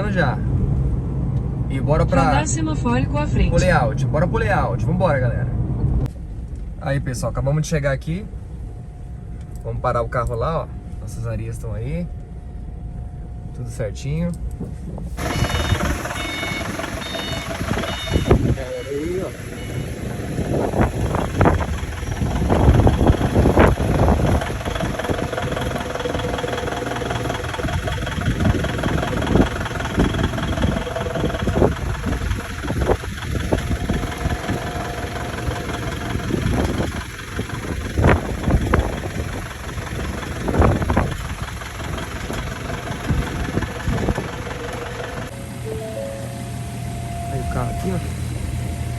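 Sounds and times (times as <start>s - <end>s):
vehicle engine running: 15.1s - 48.9s.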